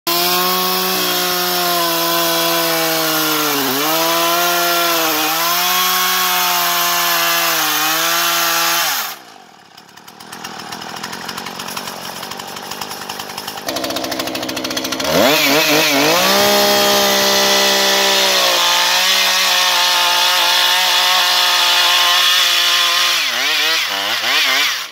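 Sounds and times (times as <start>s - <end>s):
small engine running fast: 10.2s - 19.4s, 20.1s - 24.9s.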